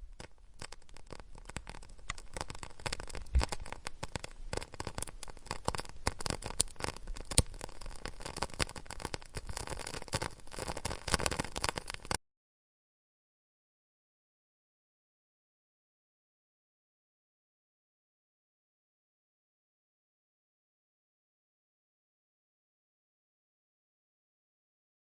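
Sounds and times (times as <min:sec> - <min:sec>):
campfire crackling: 0:00.0 - 0:12.2
sharp fire pops: 0:00.0 - 0:12.2.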